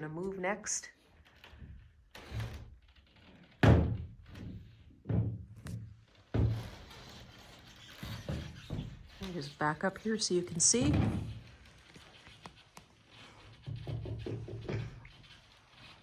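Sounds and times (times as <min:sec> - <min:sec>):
hollow thuds on greenhouse roof: 0:03.6 - 0:09.2.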